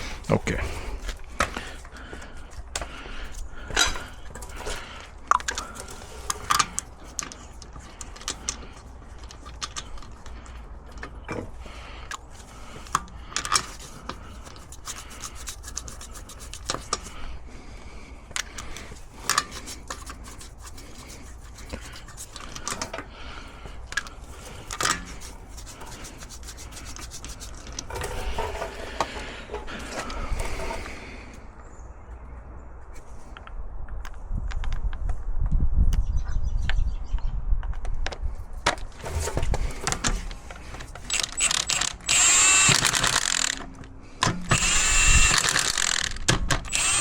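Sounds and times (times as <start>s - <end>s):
rubbing and scraping: 0.0s - 31.4s, 38.8s - 43.8s
tools clicking and knocking: 1.0s - 12.2s, 12.8s - 17.2s, 18.3s - 23.1s, 23.8s - 31.0s, 38.1s - 47.0s.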